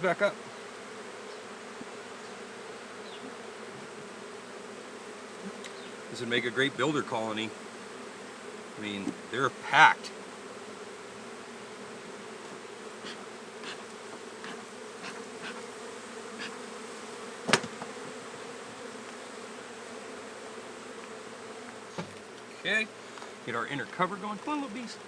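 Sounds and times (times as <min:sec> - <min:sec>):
bees humming: 0:00.0 - 0:25.0
sharp knock: 0:17.5 - 0:17.9.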